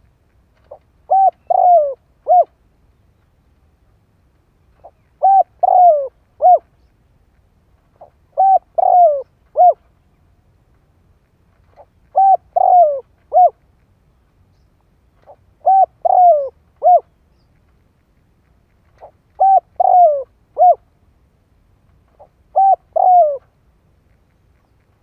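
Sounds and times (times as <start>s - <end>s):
dove cooing: 0.7s - 2.6s, 4.8s - 6.7s, 8.0s - 9.9s, 12.1s - 13.6s, 15.6s - 17.1s, 19.0s - 20.9s, 22.1s - 23.5s.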